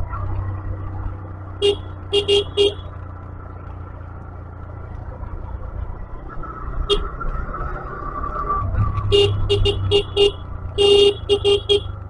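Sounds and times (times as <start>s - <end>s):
motorcycle engine: 0.0s - 12.0s
road noise: 0.0s - 12.0s
motorcycle horn beep: 1.6s - 2.9s, 9.1s - 12.0s.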